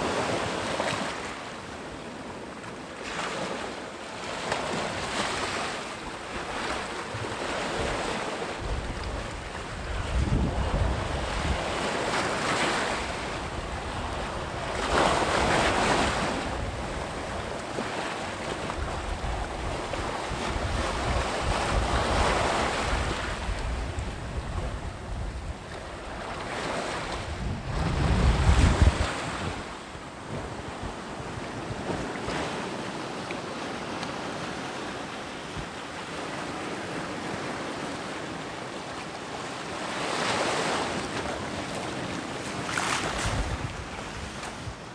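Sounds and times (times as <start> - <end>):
sea waves breaking: 0.0 - 44.9
wind buffeting microphone: 7.8 - 12.3, 18.4 - 32.4, 42.0 - 44.9.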